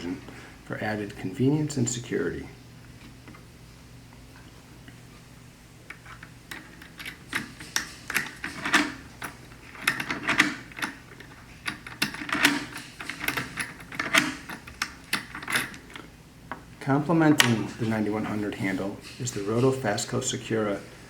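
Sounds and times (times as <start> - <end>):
faint steady hum: 0.0 - 21.0
door lock clicks and knocks: 11.7 - 15.8.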